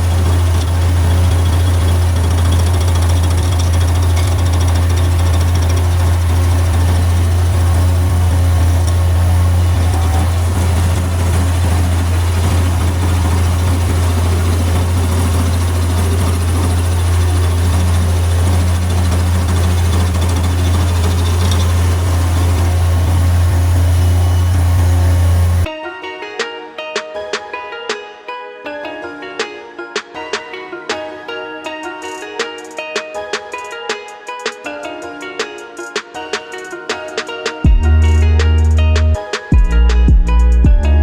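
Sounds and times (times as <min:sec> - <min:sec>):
loader engine running steadily: 0:00.0 - 0:25.7.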